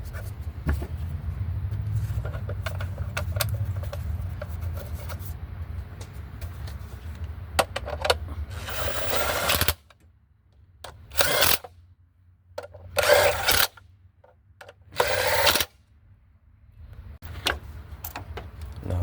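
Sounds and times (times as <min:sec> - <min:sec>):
tool clicking and rattling: 0:07.6 - 0:10.0, 0:10.8 - 0:11.7, 0:12.6 - 0:15.8.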